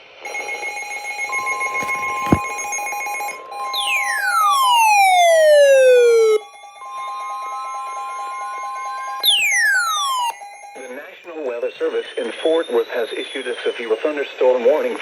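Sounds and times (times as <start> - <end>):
electronic alarm beeps: 1.3 - 2.5, 3.7 - 11.0.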